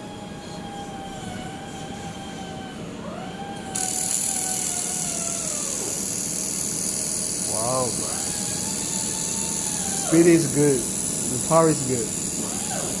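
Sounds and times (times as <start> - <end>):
laser welder machine whine: 0.0 - 13.0
loud welding hiss: 3.8 - 13.0.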